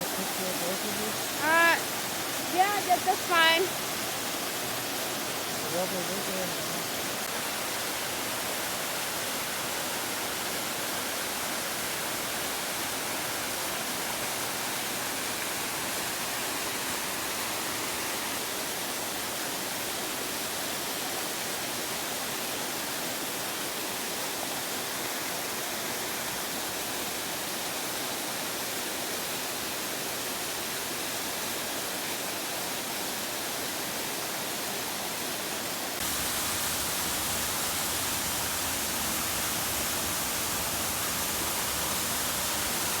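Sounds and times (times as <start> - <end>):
small waterfall rushing: 0.0 - 43.0.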